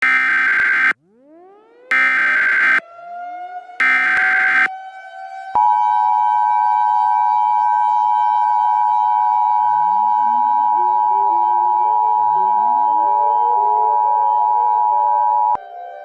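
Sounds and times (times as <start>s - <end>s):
digital data burst: 0.0s - 0.9s, 1.9s - 2.8s, 3.8s - 4.7s
two-tone alert signal: 0.0s - 0.9s, 1.9s - 2.8s, 3.8s - 4.7s
civil defence siren: 0.0s - 16.0s.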